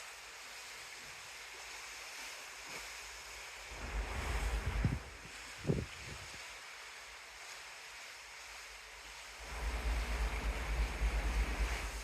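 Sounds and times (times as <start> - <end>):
sea waves hissing: 0.0 - 12.0
wind buffeting microphone: 3.7 - 6.4.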